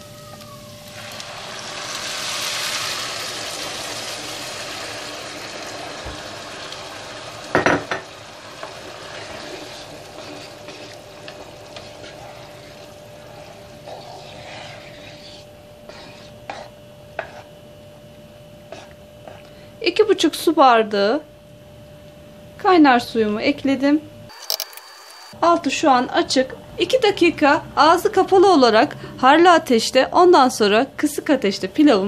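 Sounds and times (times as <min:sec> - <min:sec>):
water hissing in hot oil: 0:00.6 - 0:15.4.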